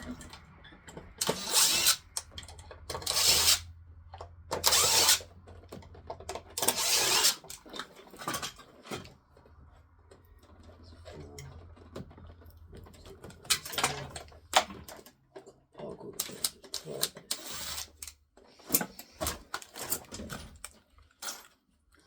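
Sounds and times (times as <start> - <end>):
power drill bursts: 1.2 - 2.0, 4.6 - 5.2, 6.6 - 7.4.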